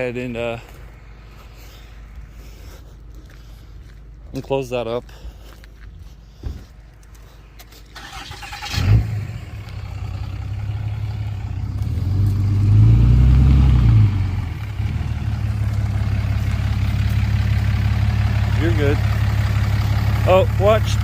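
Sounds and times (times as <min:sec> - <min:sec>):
diesel engine idling and revving: 0:05.1 - 0:21.0
starter cranking engine: 0:08.0 - 0:09.0.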